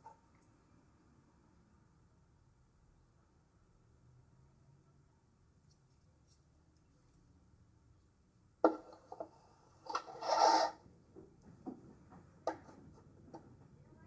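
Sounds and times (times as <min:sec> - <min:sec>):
short scraping rub: 0:09.8 - 0:10.8.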